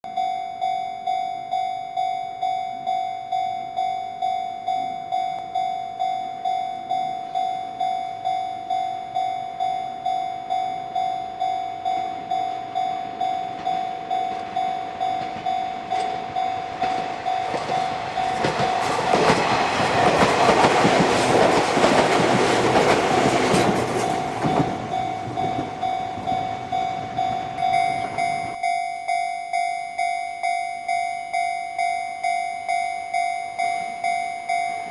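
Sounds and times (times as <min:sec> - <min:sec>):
level crossing bell ringing: 0:00.1 - 0:19.7, 0:24.1 - 0:34.9
train passing: 0:09.0 - 0:28.8, 0:31.9 - 0:34.9.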